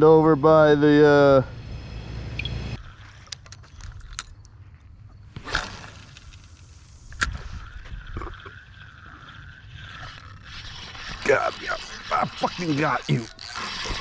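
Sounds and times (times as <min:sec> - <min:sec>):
spinning reel whirring: 0:05.4 - 0:14.0.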